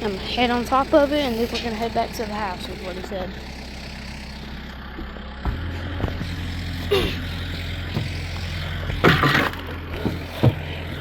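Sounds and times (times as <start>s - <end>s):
vehicle engine humming: 0.0s - 11.0s
knocks and clatter: 5.0s - 6.4s, 7.2s - 11.0s.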